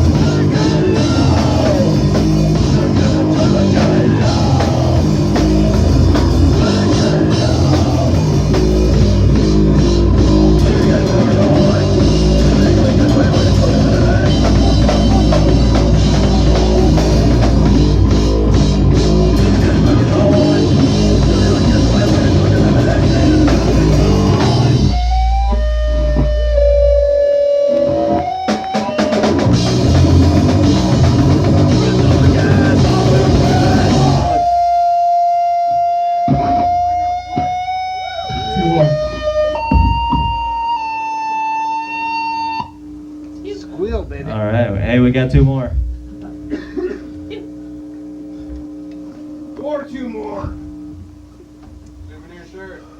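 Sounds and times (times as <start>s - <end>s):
rock band playing loud: 0.0s - 43.2s
held guitar note ringing: 11.9s - 48.1s.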